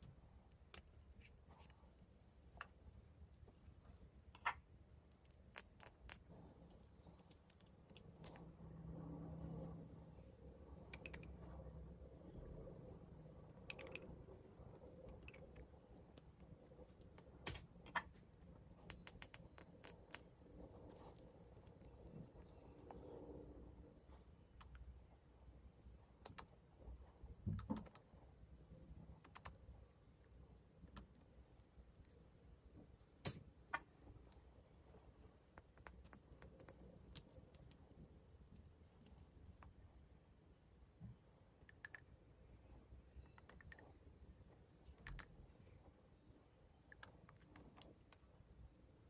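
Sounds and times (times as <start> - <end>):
small sharp clicks and taps: 33.2 - 39.8.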